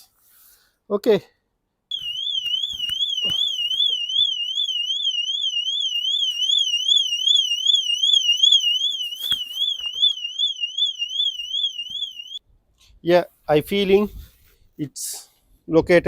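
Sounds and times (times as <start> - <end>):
car alarm siren warbling: 1.9 - 12.4.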